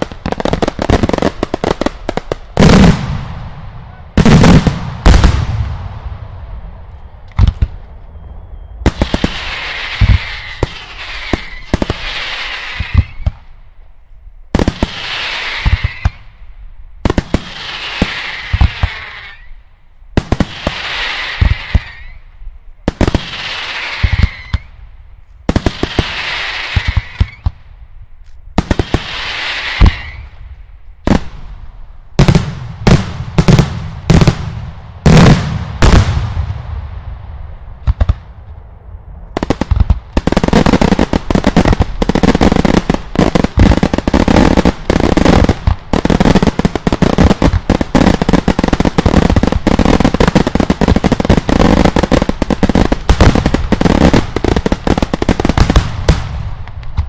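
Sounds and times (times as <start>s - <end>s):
firework bangs: 0.0s - 6.5s, 8.8s - 13.5s, 32.2s - 38.6s, 39.3s - 57.0s
firework crackling: 8.9s - 13.4s, 28.6s - 30.4s, 39.3s - 57.0s.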